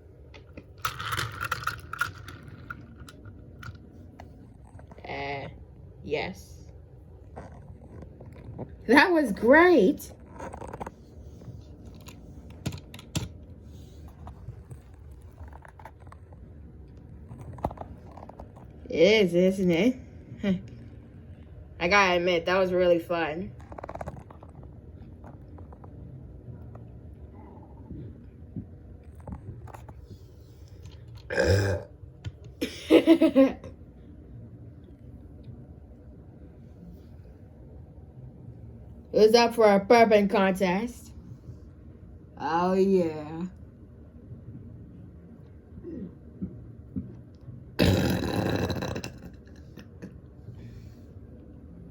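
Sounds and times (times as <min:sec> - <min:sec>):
voiced burps: 0:31.3 - 0:32.0, 0:47.8 - 0:49.9.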